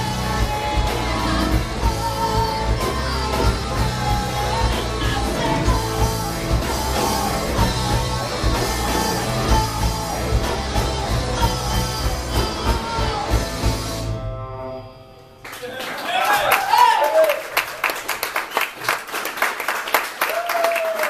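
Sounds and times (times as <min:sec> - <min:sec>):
drums: 0:00.0 - 0:14.4
live rock band: 0:00.0 - 0:15.6.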